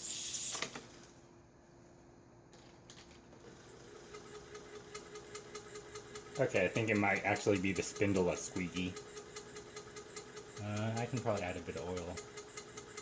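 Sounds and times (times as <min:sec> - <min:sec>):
floppy disk clatter: 0:10.7 - 0:12.2
rapid ticking of drive head: 0:10.7 - 0:12.2.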